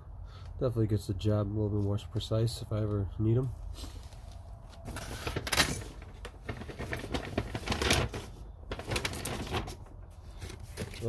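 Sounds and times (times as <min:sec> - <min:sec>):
tools and packaging handling: 0:03.9 - 0:11.0.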